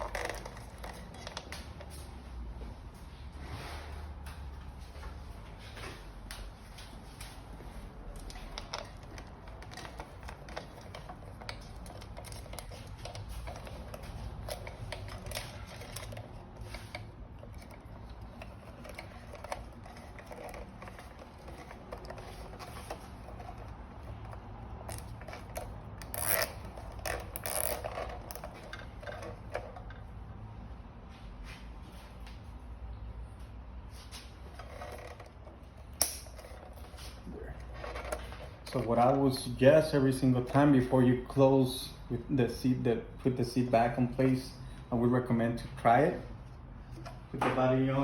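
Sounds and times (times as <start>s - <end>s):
plastic rustling and rubbing: 6.9s - 29.9s.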